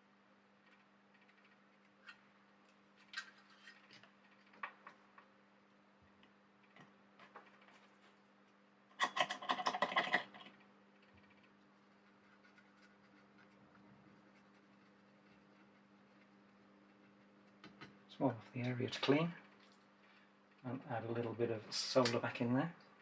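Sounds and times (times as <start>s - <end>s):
rapid scratching: 11.0s - 17.7s.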